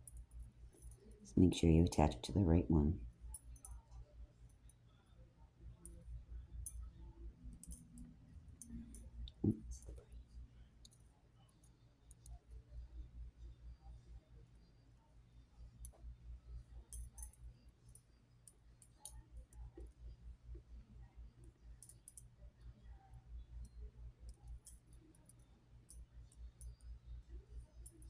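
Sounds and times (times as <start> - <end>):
metal rings and glass beads clinking: 3.2 - 3.9, 7.5 - 10.0, 16.9 - 18.0, 21.8 - 22.2, 23.6 - 26.0.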